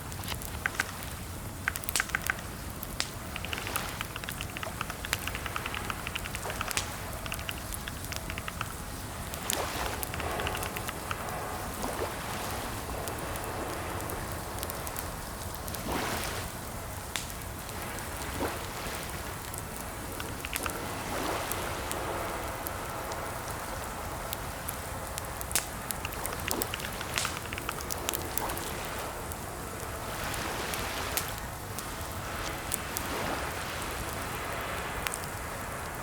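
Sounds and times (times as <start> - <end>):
steady rushing hiss: 0.0 - 36.0
keyboard typing clicks: 1.6 - 2.5, 3.1 - 8.8, 9.6 - 11.2, 20.2 - 20.8, 25.9 - 28.5.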